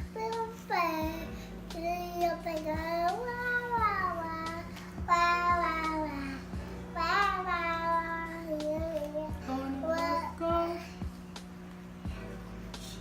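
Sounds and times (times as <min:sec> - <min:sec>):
young child singing: 0:00.0 - 0:11.1.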